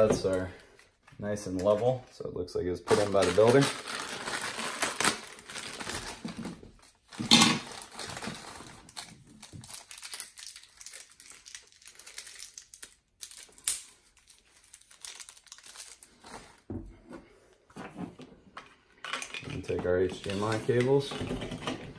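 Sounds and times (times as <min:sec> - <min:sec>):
plastic parts rustling: 0:02.9 - 0:16.7, 0:18.6 - 0:21.9.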